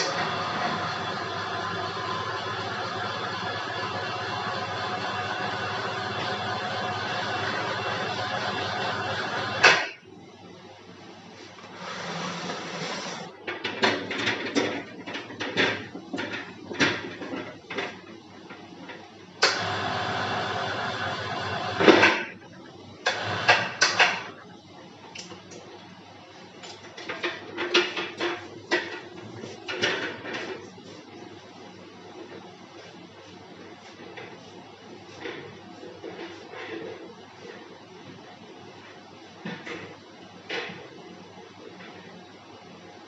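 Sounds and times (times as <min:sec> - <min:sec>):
injection moulding machine running: 0:00.0 - 0:09.8, 0:19.4 - 0:22.0, 0:23.0 - 0:24.0
machine stopping with sharp clack: 0:19.4 - 0:19.9.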